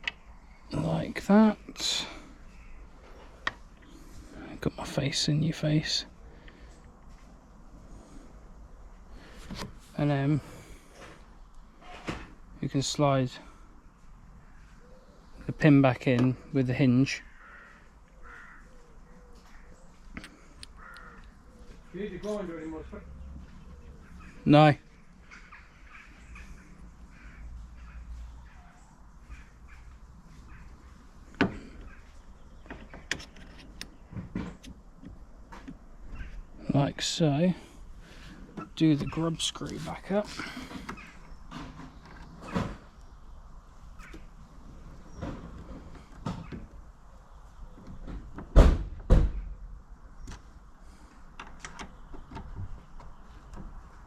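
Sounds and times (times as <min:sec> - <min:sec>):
crows cawing: 0:17.2 - 0:22.0, 0:22.9 - 0:32.6, 0:40.3 - 0:41.4, 0:43.9 - 0:44.4.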